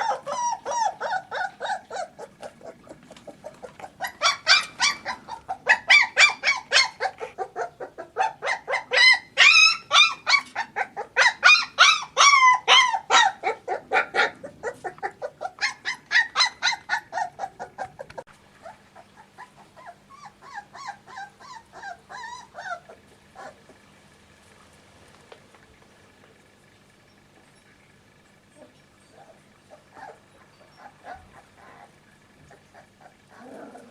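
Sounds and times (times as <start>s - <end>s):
puppies whining and yelping: 0.0s - 23.8s, 28.5s - 33.9s.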